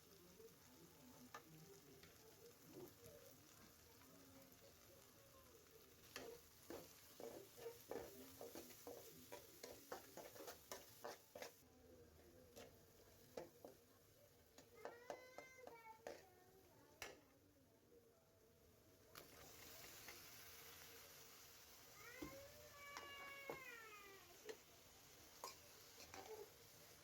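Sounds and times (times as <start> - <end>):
faint sizzle: 0.0 - 27.0
spoon tapping a pan: 6.0 - 11.5, 14.5 - 16.3, 17.0 - 17.3, 22.2 - 23.7, 25.4 - 26.4.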